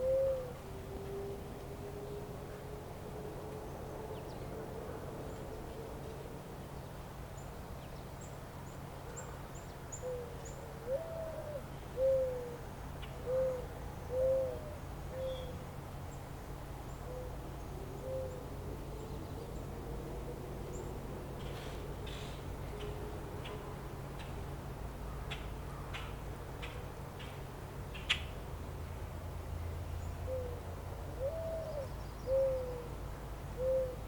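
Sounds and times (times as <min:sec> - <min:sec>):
bird hooting calls: 0:00.0 - 0:01.4, 0:09.9 - 0:15.6, 0:17.0 - 0:18.4, 0:30.3 - 0:30.6, 0:31.2 - 0:33.0, 0:33.6 - 0:34.0.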